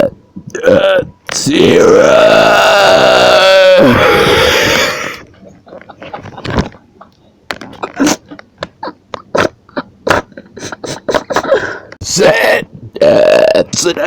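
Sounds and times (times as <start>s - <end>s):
loud human burp: 0.0s - 1.0s, 1.7s - 5.2s, 13.0s - 13.8s.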